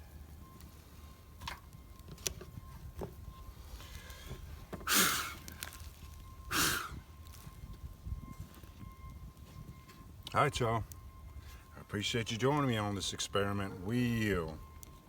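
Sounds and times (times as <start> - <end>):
breathy exhalations: 3.9 - 5.4, 6.5 - 7.0.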